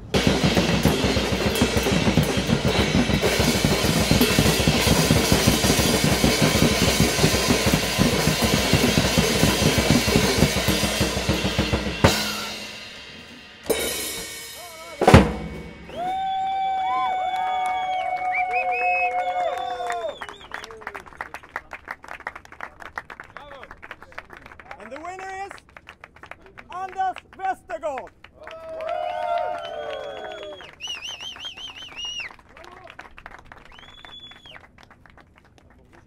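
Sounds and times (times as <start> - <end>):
fast drumming on drums and cymbals: 0.0 - 16.4
sharp strikes: 0.1 - 16.2.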